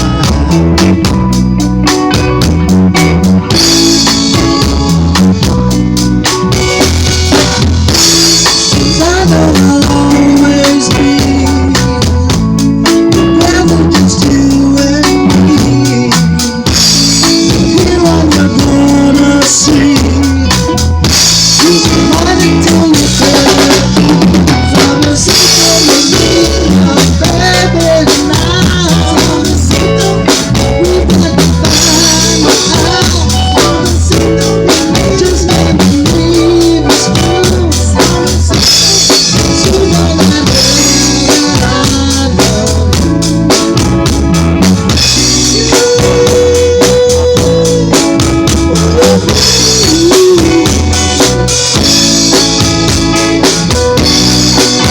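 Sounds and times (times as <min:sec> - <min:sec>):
band playing: 0:00.0 - 0:54.9
drum kit beat: 0:00.0 - 0:54.9.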